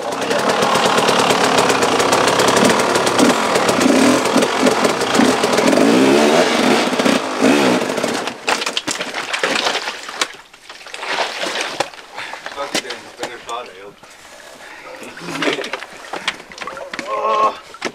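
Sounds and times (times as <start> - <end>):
dirt bike engine revving: 0.0 - 8.5.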